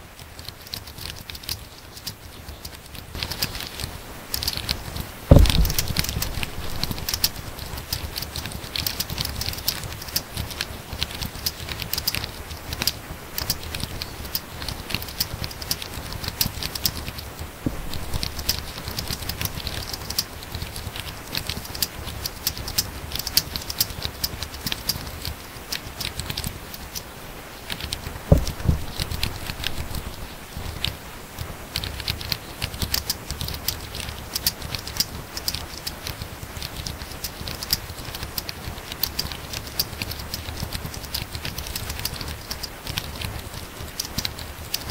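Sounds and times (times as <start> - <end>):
deep knock: 5.3 - 7.4, 17.7 - 18.6, 28.3 - 30.2
fast typing on keyboard: 31.7 - 44.9.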